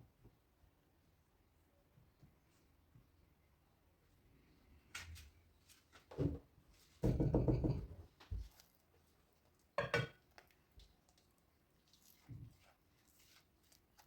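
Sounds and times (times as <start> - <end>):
kitchenware knocking and clattering: 7.0 - 8.1, 9.8 - 10.2.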